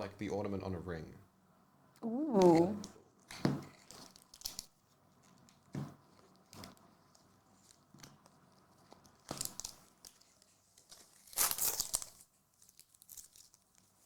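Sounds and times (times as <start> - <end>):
wrapper tearing and crinkling: 9.2 - 10.2, 10.8 - 14.0.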